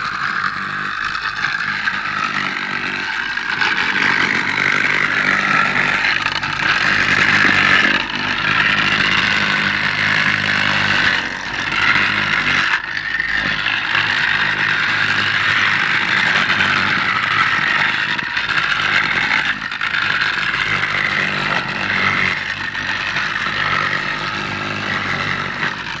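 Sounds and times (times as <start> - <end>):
engine drone: 0.0 - 26.0.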